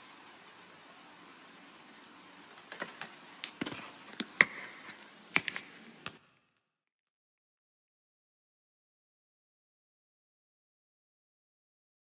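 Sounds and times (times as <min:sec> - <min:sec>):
faint hiss: 0:00.0 - 0:06.5
sharp clicks and taps: 0:02.6 - 0:06.2.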